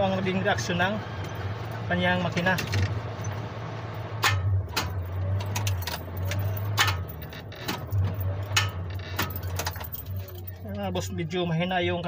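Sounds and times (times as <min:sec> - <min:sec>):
ignition keys jingling: 0:04.2 - 0:11.2.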